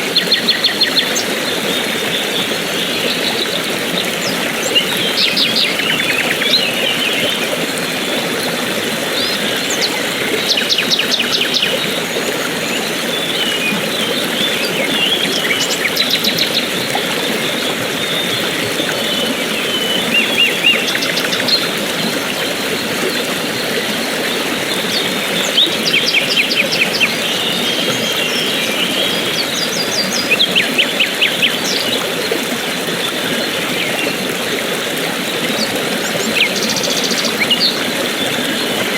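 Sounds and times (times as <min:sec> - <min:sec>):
stream rushing: 0:00.0 - 0:38.9.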